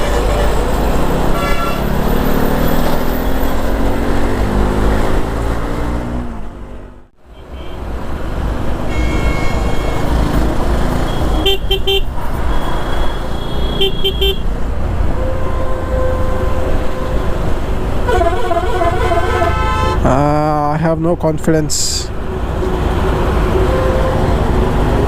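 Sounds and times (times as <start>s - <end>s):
vehicle horns beeping: 0.0s - 0.7s, 1.3s - 2.0s, 7.3s - 7.9s, 8.8s - 14.5s, 15.1s - 20.2s, 23.5s - 24.4s
wind and road noise: 0.0s - 25.0s.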